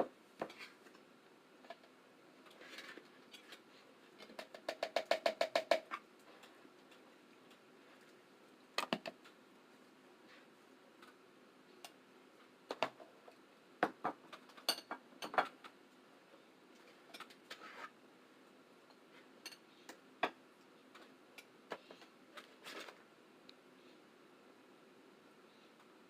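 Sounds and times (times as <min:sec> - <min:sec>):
clicks and cracks of eating: 0:01.6 - 0:08.2.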